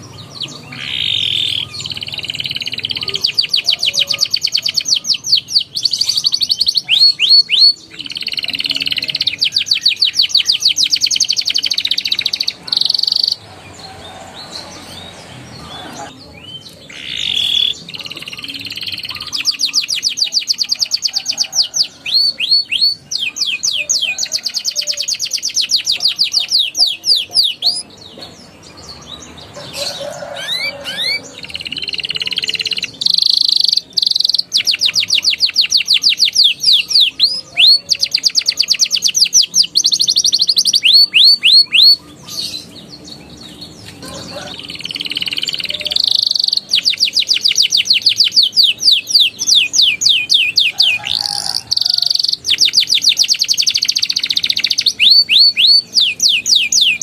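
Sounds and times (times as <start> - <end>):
canary singing: 0.0 - 57.0.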